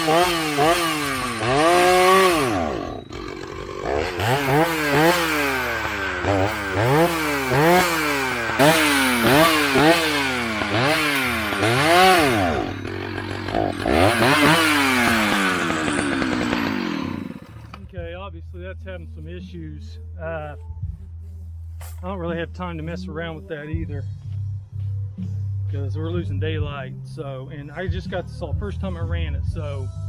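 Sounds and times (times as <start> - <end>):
chainsaw revving: 0.0 - 17.8.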